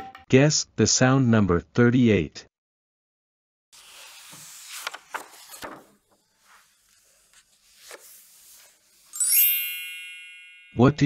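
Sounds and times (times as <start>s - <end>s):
book page turning: 3.8s - 9.2s
bright chime: 9.1s - 11.0s.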